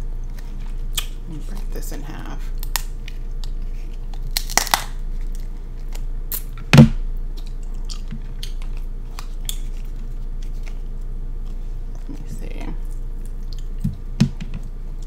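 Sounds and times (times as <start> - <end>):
chewing and mouth sounds: 7.3 - 12.2, 12.8 - 15.0.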